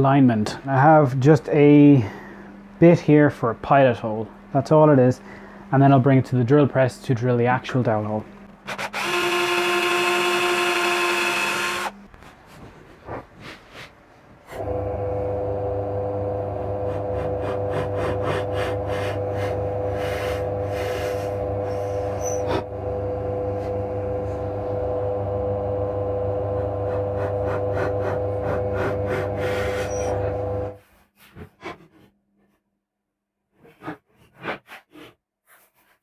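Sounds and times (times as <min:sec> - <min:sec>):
drill press motor humming: 0:08.2 - 0:12.2, 0:14.5 - 0:30.8
drill bit scraping wood: 0:08.6 - 0:12.0, 0:14.5 - 0:24.9, 0:26.4 - 0:30.8
power drill running: 0:08.7 - 0:12.0, 0:14.6 - 0:30.8.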